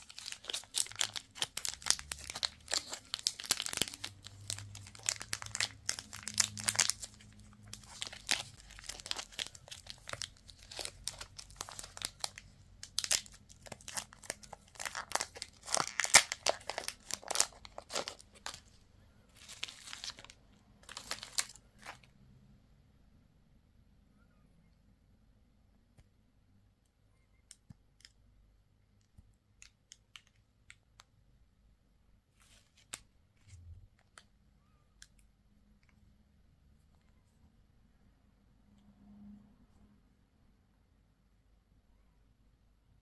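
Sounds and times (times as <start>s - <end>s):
packaging crinkling and tearing: 0.0s - 22.1s.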